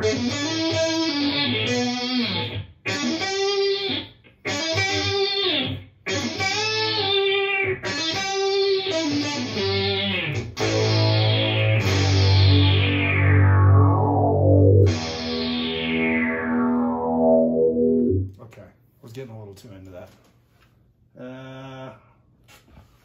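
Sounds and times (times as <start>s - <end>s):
electric guitar with robotic synth tone: 0.0s - 18.3s.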